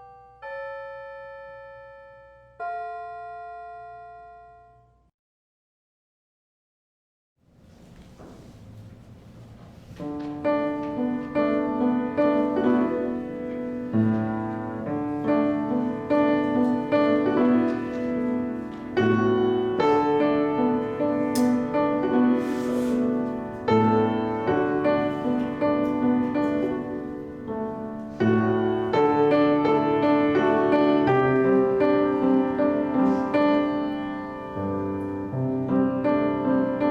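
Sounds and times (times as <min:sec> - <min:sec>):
slow piano chords: 0:07.5 - 0:36.9.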